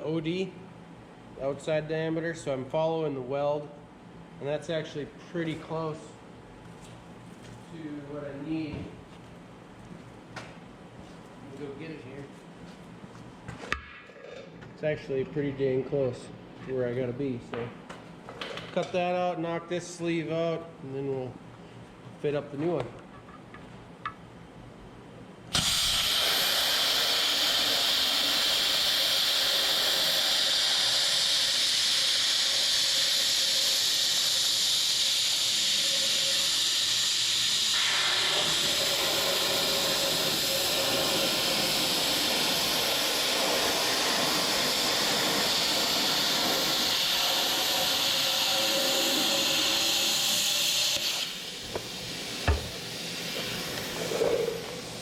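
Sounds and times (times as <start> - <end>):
cutting torch hissing: 25.5 - 55.0
short knock: 51.7 - 52.8.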